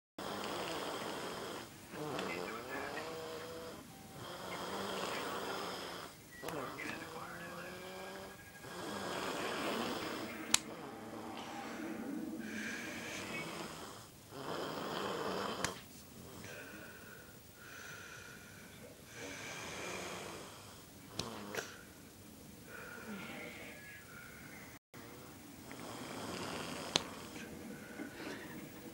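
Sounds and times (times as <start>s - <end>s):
person snoring: 0.2s - 21.8s, 25.7s - 28.8s
whistling wheeze: 10.0s - 13.5s.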